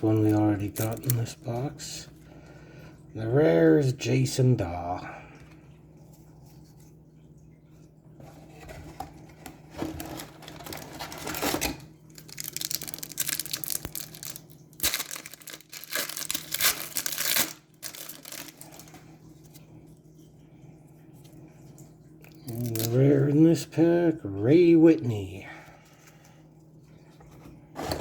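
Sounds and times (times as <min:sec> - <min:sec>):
wrapper tearing and crinkling: 0:00.1 - 0:01.2, 0:09.8 - 0:19.0, 0:22.5 - 0:23.0.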